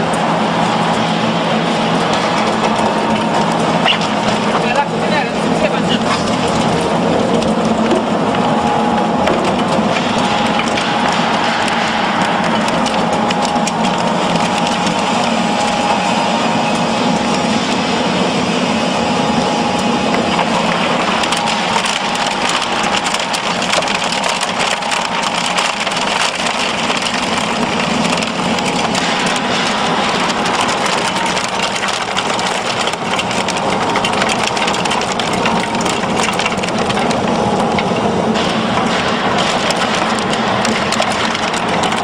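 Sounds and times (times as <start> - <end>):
dense crackling: 0.0 - 42.0
machinery humming: 0.0 - 42.0.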